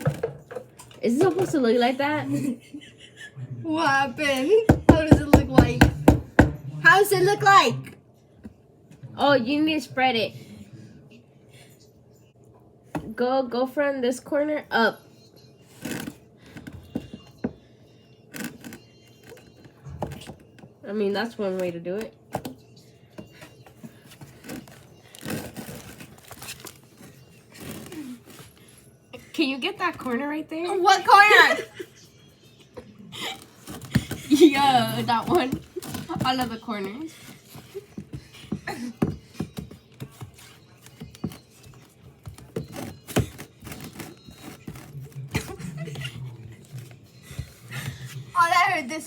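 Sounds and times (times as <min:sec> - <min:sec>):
utensil knocking on baking pan: 0:04.7 - 0:06.6.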